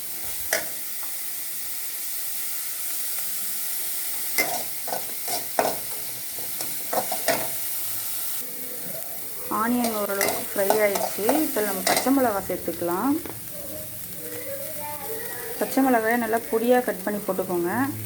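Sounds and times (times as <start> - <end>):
onion sizzling in oil: 0.0 - 18.0
spatula scraping pan: 4.3 - 7.6, 9.5 - 12.6.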